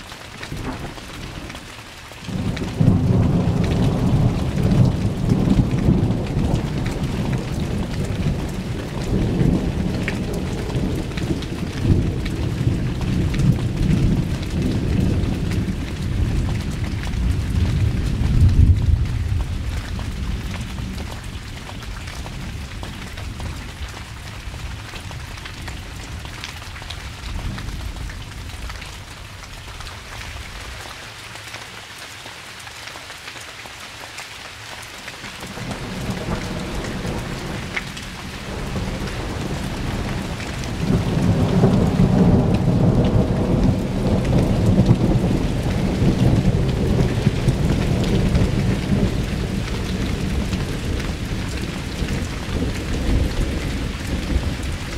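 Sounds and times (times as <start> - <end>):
rain falling: 0.0 - 54.9
rolling thunder: 0.5 - 1.6, 2.3 - 21.3, 35.4 - 54.9.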